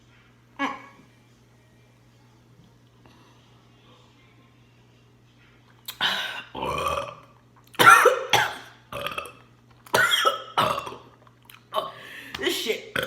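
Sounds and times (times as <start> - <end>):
woman burping loudly: 5.9 - 12.0.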